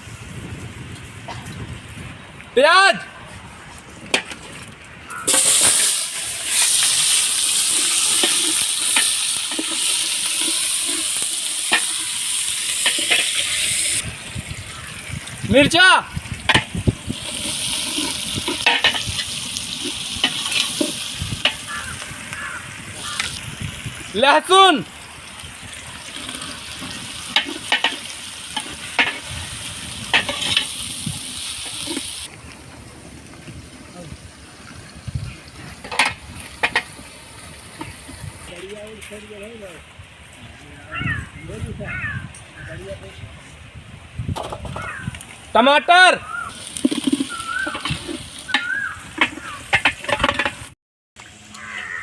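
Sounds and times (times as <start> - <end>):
onions sizzling in oil: 5.1 - 32.6, 33.3 - 38.7, 46.2 - 50.7.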